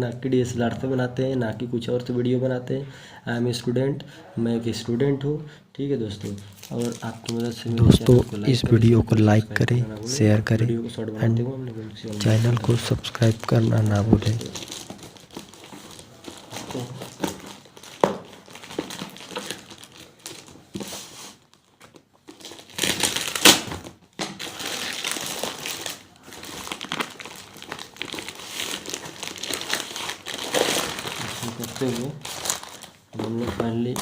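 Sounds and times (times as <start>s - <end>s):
packaging crinkling and rustling: 6.2s - 9.0s, 12.0s - 34.0s.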